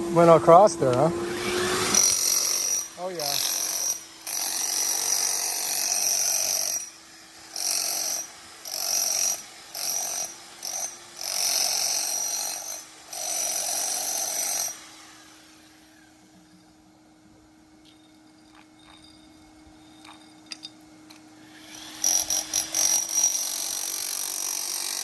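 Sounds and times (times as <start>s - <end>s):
electric jackhammer chipping plaster: 0.5s - 16.5s, 18.1s - 25.0s.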